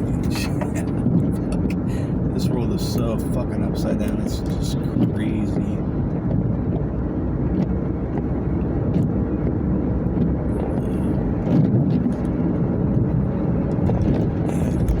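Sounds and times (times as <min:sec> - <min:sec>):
car cabin road rumble: 0:00.0 - 0:15.0.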